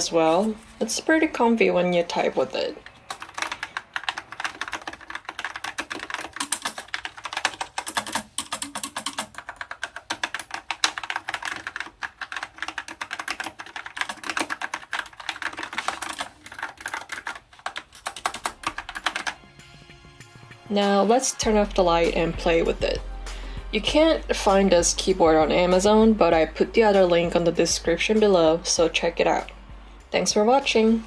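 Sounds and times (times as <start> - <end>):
mechanical keyboard typing: 2.8 - 19.5.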